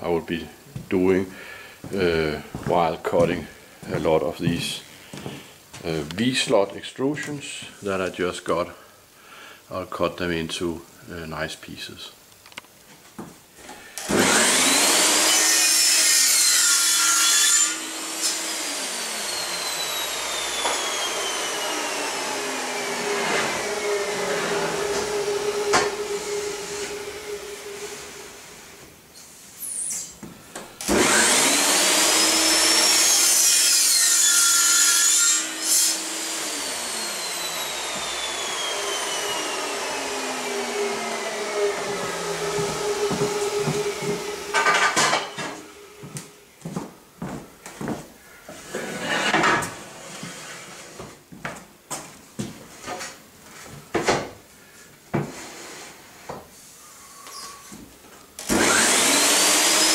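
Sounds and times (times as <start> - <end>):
miter saw cutting metal: 14.0 - 28.8, 30.8 - 46.0, 58.4 - 59.9.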